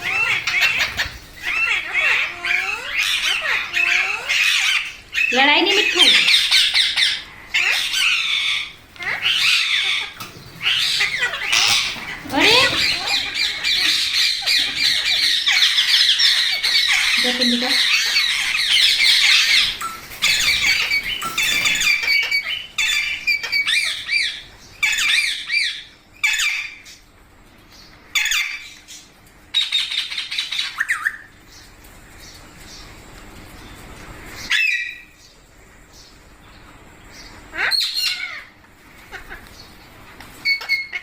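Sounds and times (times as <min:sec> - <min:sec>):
parakeet squawking: 0:00.0 - 0:26.8.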